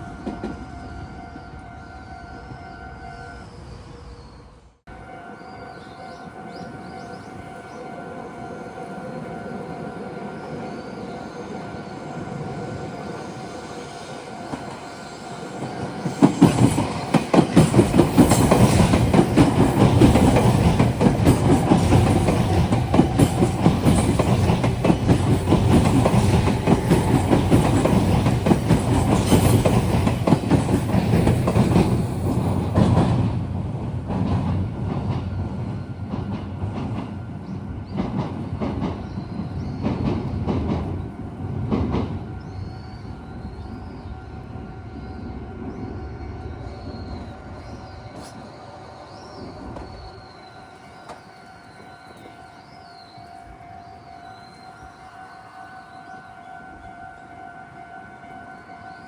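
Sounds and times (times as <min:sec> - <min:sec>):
train wheels clattering over rails: 0:15.5 - 0:42.3.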